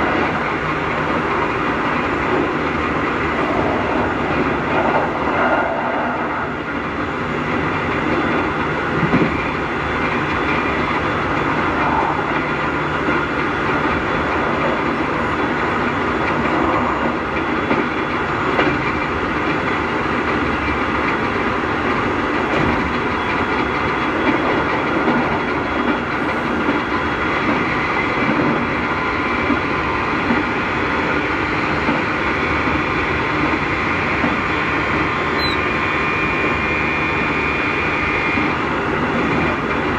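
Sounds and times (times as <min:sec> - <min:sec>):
electric train motor noise: 0:00.0 - 0:39.9
wheels clattering on rails: 0:00.0 - 0:39.9.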